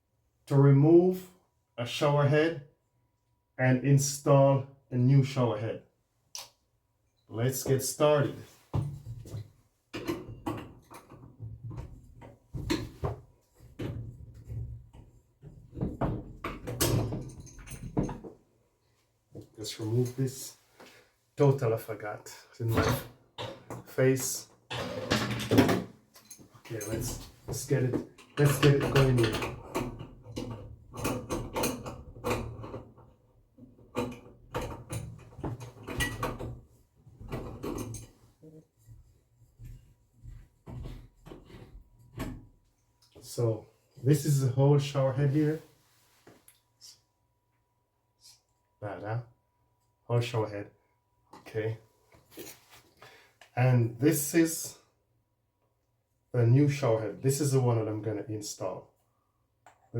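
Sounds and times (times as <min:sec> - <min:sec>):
objects knocking and bumping: 0:08.7 - 0:18.4, 0:39.6 - 0:42.5.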